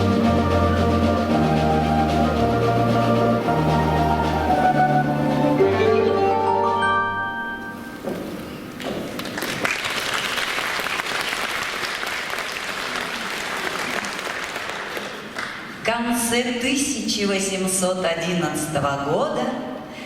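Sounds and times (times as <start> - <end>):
folk orchestra chord: 0.0 - 7.9
audience applause: 9.1 - 15.6.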